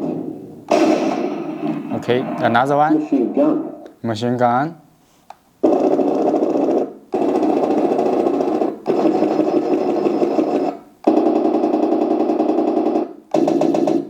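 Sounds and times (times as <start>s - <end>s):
machine-gun sound effect from speaker: 5.6s - 14.0s.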